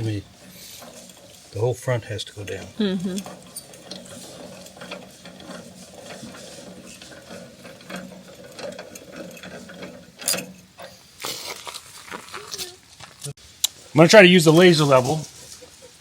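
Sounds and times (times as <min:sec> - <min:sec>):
metal clatter: 0:00.0 - 0:11.9.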